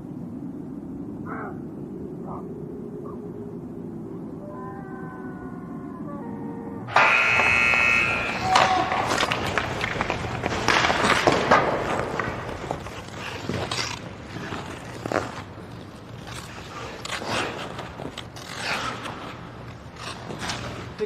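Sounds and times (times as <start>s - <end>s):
skate blades scraping ice: 7.0s - 21.0s.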